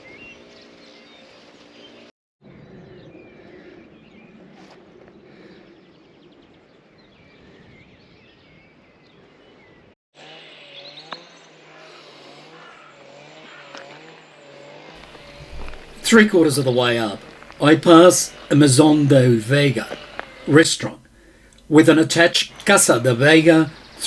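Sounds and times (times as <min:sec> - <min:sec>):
birds chirping: 0:15.0 - 0:24.0
faint outdoor ambience: 0:15.0 - 0:24.0.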